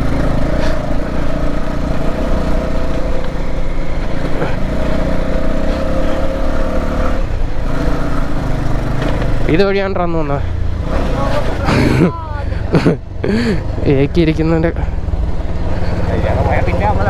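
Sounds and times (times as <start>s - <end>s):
motorcycle engine running at low revs: 0.0s - 11.8s.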